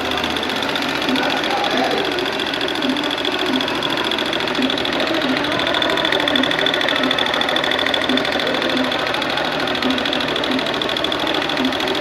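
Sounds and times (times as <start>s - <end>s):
metallic ticking rattle: 0.0s - 12.0s
motorcycle engine running: 0.0s - 12.0s.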